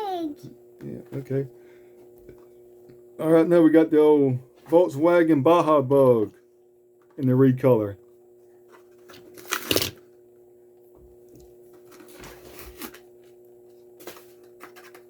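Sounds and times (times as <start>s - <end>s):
packaging rustling and clicking: 8.8s - 10.0s, 14.0s - 15.0s
cardboard tearing: 9.1s - 10.0s, 12.0s - 13.0s.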